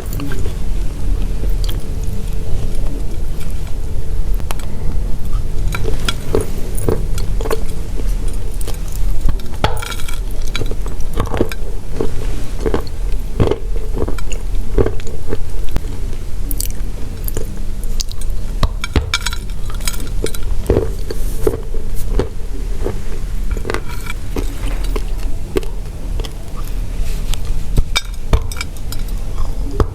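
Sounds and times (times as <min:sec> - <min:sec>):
steady low hum: 0:00.0 - 0:29.9
chewing crunchy chalk: 0:19.5 - 0:29.8.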